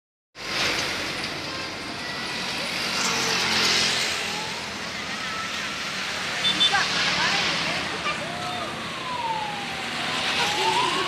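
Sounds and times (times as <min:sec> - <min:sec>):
bus passing on road: 0:00.4 - 0:11.0.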